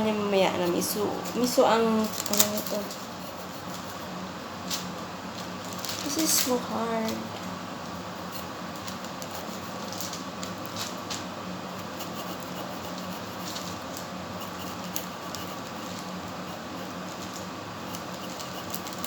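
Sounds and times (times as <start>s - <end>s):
steady background hum: 0.0s - 19.0s
utensils clicking and tapping: 0.6s - 4.9s, 8.2s - 19.0s.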